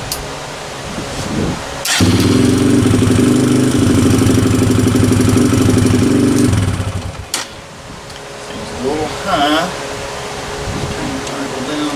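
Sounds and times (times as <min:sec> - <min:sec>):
motorcycle engine starting and idling: 0:01.9 - 0:07.6.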